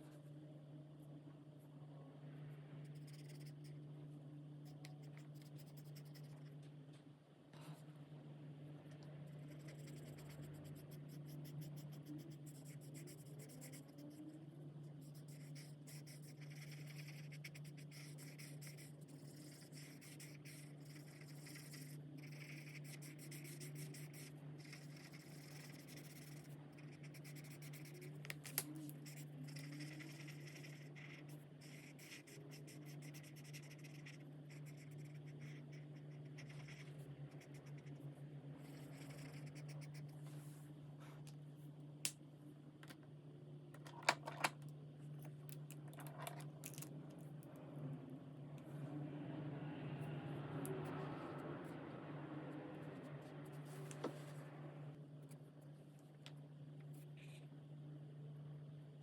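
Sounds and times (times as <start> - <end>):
steady low hum: 0.0 - 59.0
marker scratching on paper: 2.9 - 3.7, 9.3 - 14.3, 14.9 - 38.0, 38.6 - 40.1.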